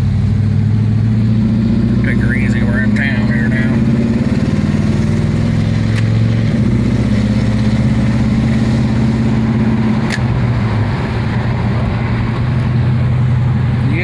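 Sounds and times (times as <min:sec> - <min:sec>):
car engine droning: 0:00.0 - 0:14.0.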